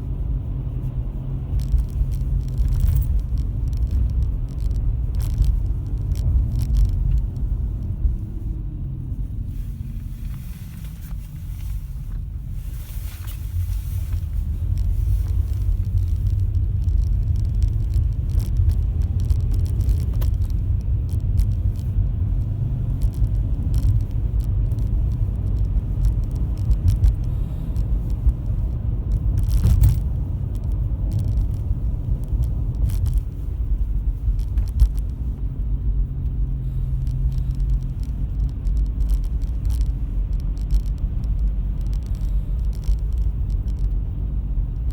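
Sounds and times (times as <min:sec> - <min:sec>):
car driving low rumble: 0:00.0 - 0:44.9
worn wheel bearing hum: 0:00.0 - 0:44.9
faint clicks: 0:37.0 - 0:44.9.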